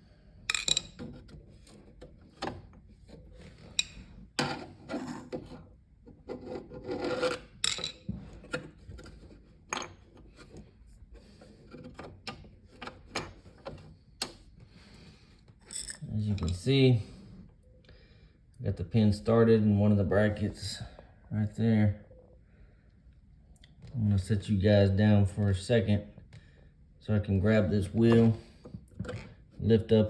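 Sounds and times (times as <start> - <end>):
metal scraping and rubbing: 3.0 - 7.6.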